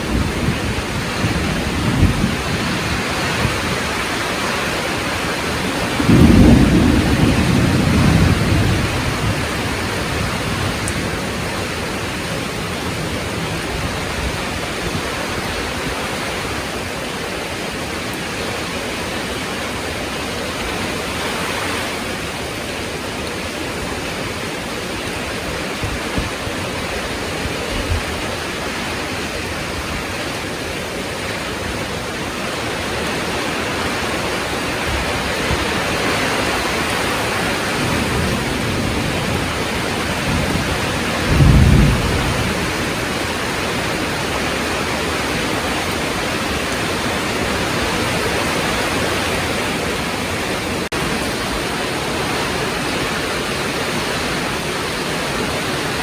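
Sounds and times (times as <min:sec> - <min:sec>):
thunder rumbling: 0:00.0 - 0:15.9, 0:33.9 - 0:53.5
heavy rain: 0:00.0 - 0:56.0.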